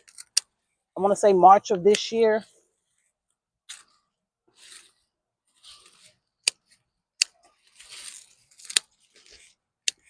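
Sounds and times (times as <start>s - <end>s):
foliage rustling: 7.5s - 9.6s.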